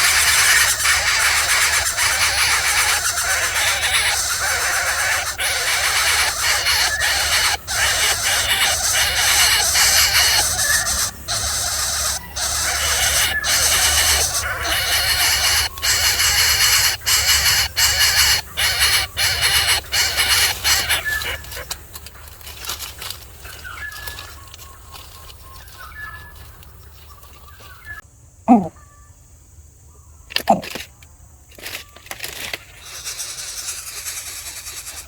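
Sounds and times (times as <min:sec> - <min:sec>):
bird squawking: 0:00.0 - 0:21.8, 0:27.1 - 0:29.0, 0:32.8 - 0:35.0.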